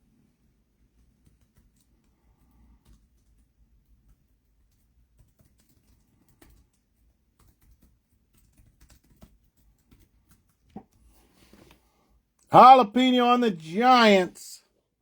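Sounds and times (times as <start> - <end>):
faint clicks and taps: 0.9 - 11.0.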